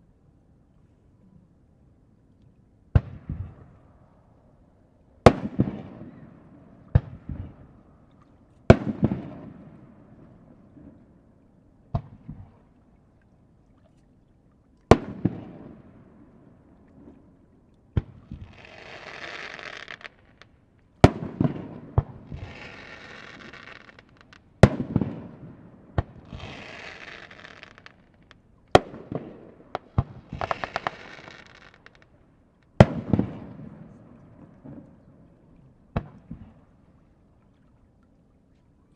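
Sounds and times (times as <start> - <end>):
fireworks crackling: 18.5 - 20.5, 22.3 - 24.4, 26.3 - 29.2, 29.8 - 32.1
fireworks booming: 28.8 - 32.0.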